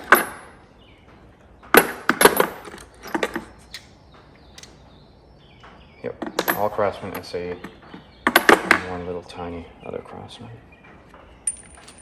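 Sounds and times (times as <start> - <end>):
metal sockets clinking: 11.4 - 12.0.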